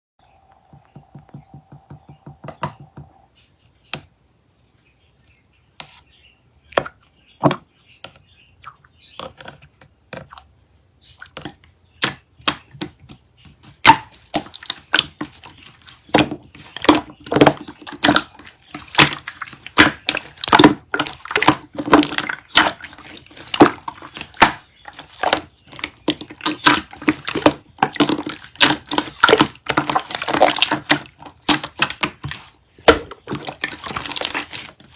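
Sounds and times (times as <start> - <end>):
slime clicking and popping: 16.1 - 34.9.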